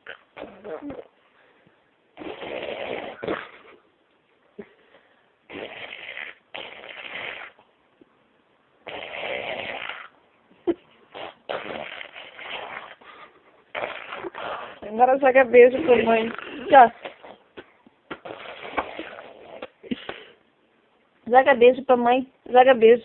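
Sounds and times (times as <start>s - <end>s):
baby blowing raspberries: 0.0s - 1.2s, 2.2s - 3.8s, 5.5s - 7.6s, 8.8s - 10.2s, 11.1s - 14.9s, 15.7s - 20.3s.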